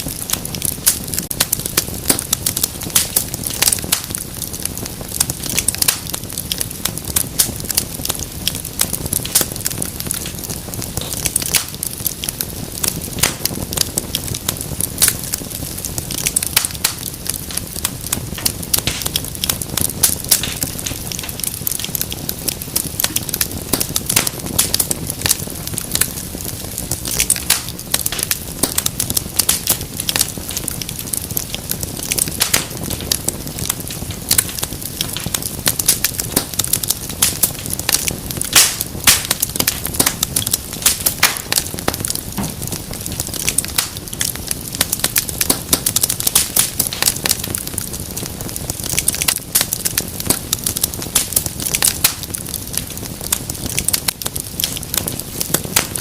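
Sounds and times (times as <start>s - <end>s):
low rumble of flame: 0.0s - 56.0s
wood fire crackling: 0.0s - 56.0s
pops and snaps: 38.0s - 42.6s.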